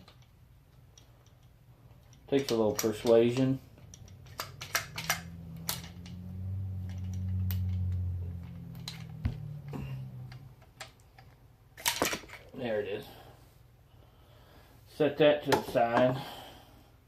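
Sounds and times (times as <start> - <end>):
small metal clicks and taps: 0.0 - 6.2, 6.8 - 9.4
low steady hum: 0.0 - 15.0.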